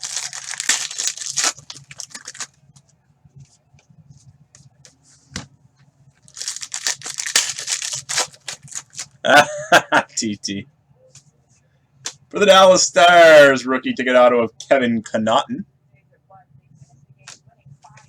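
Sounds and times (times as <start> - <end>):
wrappers tearing and crinkling: 0.0 - 2.5, 6.3 - 9.2
man talking: 10.0 - 10.7, 12.3 - 15.6.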